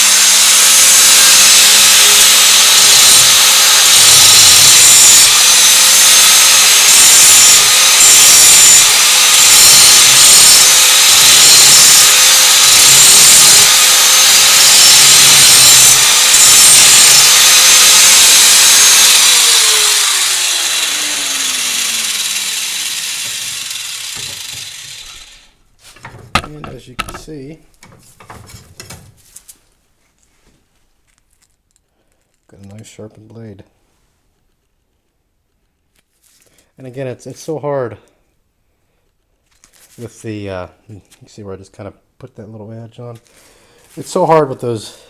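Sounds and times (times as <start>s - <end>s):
grinder motor winding down: 0.0s - 25.5s
electric grinder grinding steel: 0.0s - 25.6s, 26.3s - 27.2s.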